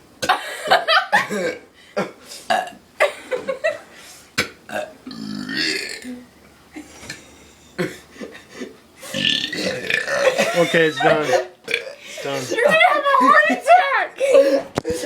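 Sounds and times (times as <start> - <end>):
person burping: 1.2 - 1.7, 2.5 - 2.8, 4.7 - 6.2, 9.1 - 12.0.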